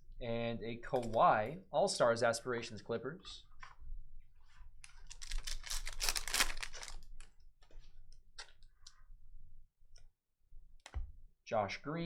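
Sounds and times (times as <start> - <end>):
foil pack crackling: 5.0 - 7.3.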